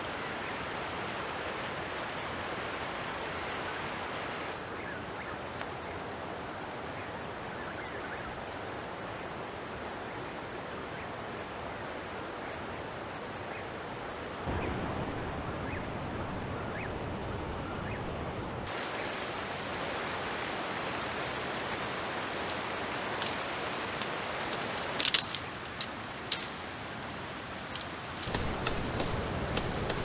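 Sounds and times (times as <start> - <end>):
creek water flowing: 14.9 - 30.0
sharp clicks and knocks: 22.4 - 26.6.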